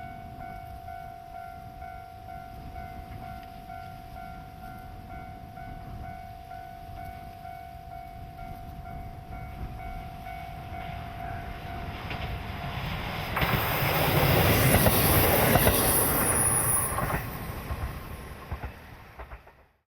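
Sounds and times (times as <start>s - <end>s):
level crossing warning bell: 0.0s - 17.6s
train wheels rattling on rails: 9.4s - 19.8s.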